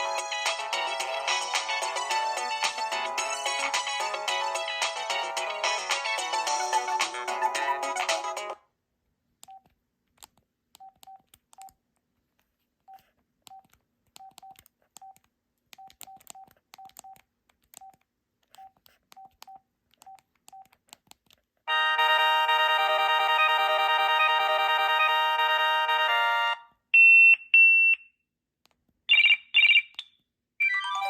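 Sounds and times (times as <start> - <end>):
cell phone ringtone: 21.7 - 26.6, 29.1 - 31.0.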